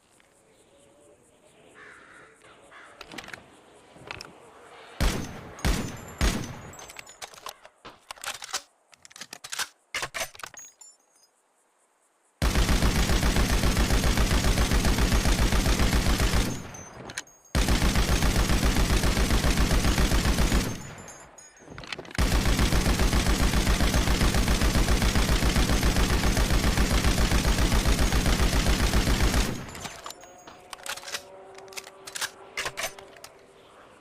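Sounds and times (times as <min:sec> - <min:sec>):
machine gun firing: 0:05.0 - 0:06.8, 0:12.4 - 0:21.2, 0:22.2 - 0:30.2
metallic clinks: 0:05.3 - 0:11.4, 0:16.4 - 0:17.6, 0:20.6 - 0:22.2, 0:29.6 - 0:33.4.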